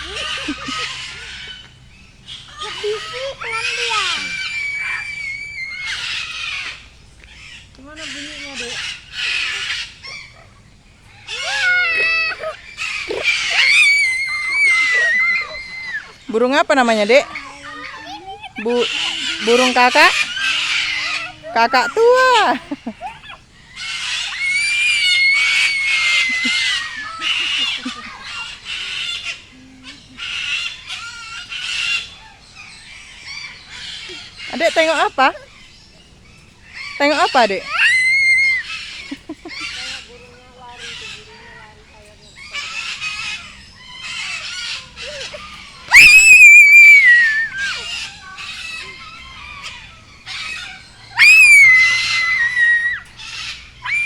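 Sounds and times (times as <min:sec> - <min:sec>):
cockatoos screeching: 0:00.0 - 0:54.0
whistle-like bird call: 0:45.9 - 0:47.9.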